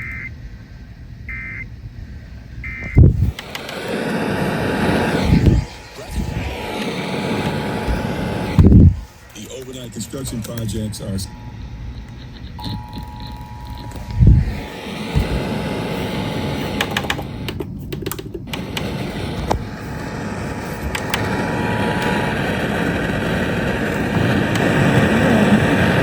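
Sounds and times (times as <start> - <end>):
radio static hiss: 2.6 - 26.0
sharp clicks: 2.7 - 9.7, 16.2 - 19.6, 20.8 - 21.4
faint steady tone: 3.9 - 16.7.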